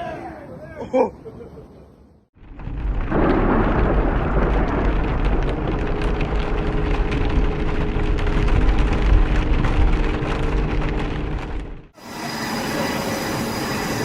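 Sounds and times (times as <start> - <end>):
rain: 2.4 - 11.8
wind rumble on microphone: 2.4 - 12.0.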